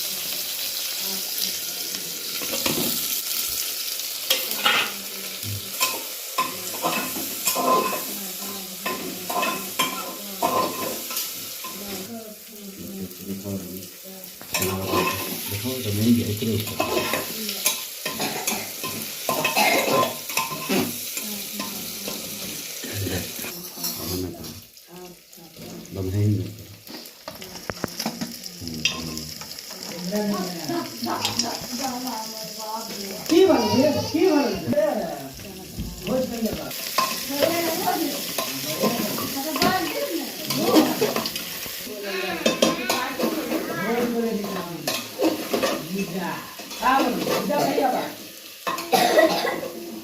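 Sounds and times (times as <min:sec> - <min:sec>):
food sizzling in a pan: 0:00.0 - 0:50.0
people talking: 0:00.9 - 0:02.2, 0:04.4 - 0:05.7, 0:06.4 - 0:11.0, 0:11.6 - 0:18.4, 0:21.2 - 0:26.5, 0:27.3 - 0:48.2
metal spoon scraping a pan: 0:04.2 - 0:12.1, 0:14.5 - 0:15.6, 0:16.6 - 0:24.6, 0:36.8 - 0:48.9.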